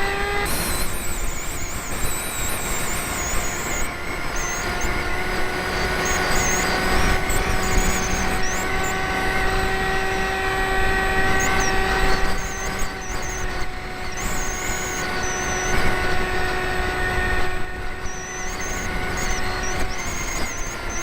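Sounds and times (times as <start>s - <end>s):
electric motor and propeller whine: 0.0s - 21.0s.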